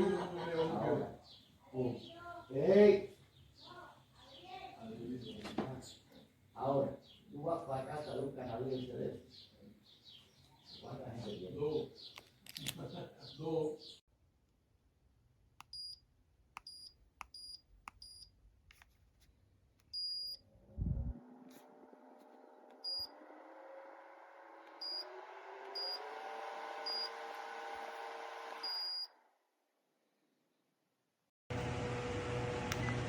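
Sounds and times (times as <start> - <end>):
fan motor humming: 20.8 - 29.0, 31.5 - 33.0
short high beeps: 28.6 - 29.1.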